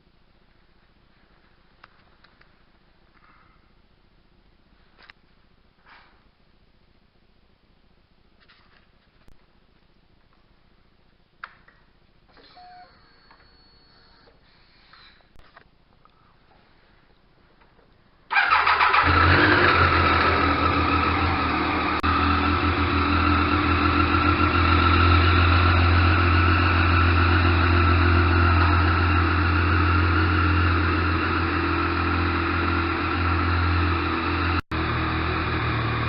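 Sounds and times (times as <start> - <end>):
motorcycle engine idling: 18.3 - 36.0.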